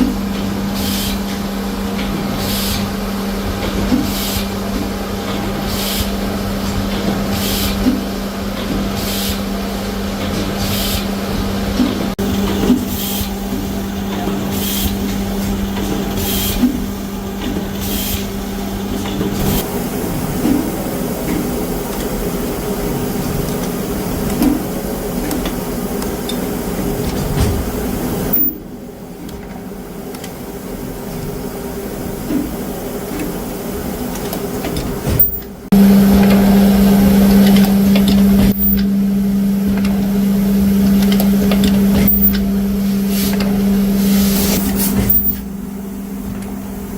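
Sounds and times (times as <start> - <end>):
machinery electric hum: 0.0 - 46.9.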